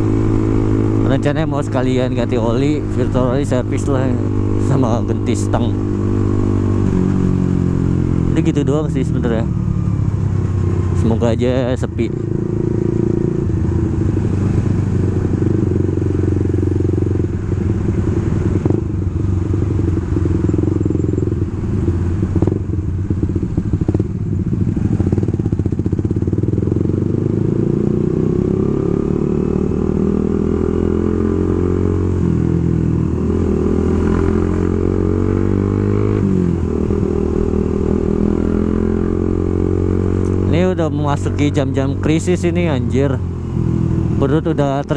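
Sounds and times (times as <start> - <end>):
motorcycle engine accelerating: 0.0 - 44.9.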